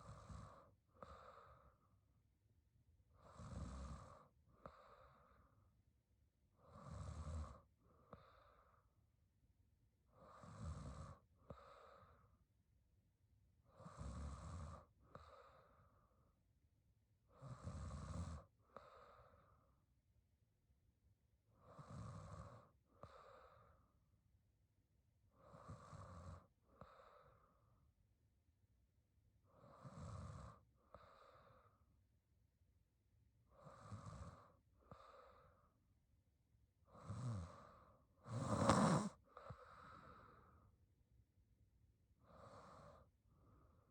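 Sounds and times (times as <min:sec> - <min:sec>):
woman snoring: 0:00.0 - 0:01.4, 0:03.2 - 0:05.0, 0:06.6 - 0:08.2, 0:10.2 - 0:11.3, 0:13.7 - 0:14.9, 0:17.4 - 0:18.9, 0:21.6 - 0:23.3, 0:25.4 - 0:26.9, 0:29.6 - 0:30.6, 0:33.6 - 0:35.1, 0:36.9 - 0:40.3.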